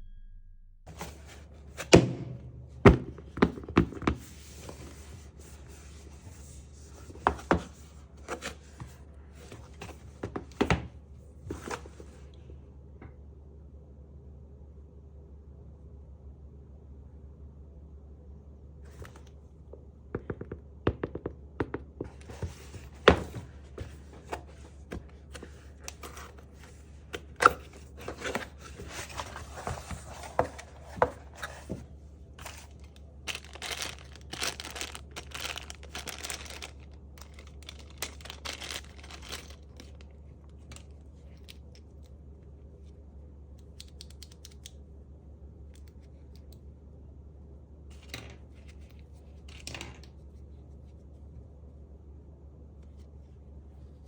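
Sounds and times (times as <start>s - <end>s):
low steady hum: 0.0s - 54.0s
plastic and paper crinkling: 32.4s - 40.9s.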